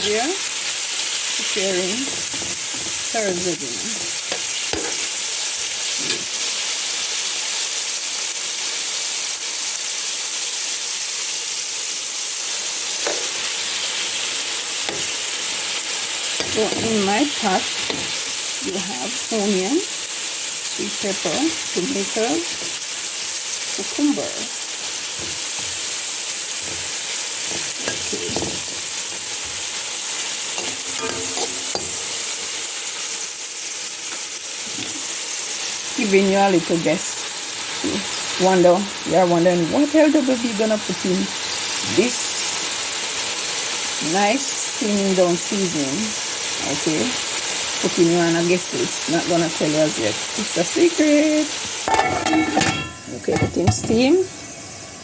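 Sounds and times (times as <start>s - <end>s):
pot sizzling on stove: 0.0s - 55.0s
spoon scraping pot: 2.0s - 5.1s, 6.0s - 6.4s, 23.8s - 29.8s, 30.5s - 32.2s, 51.6s - 54.1s.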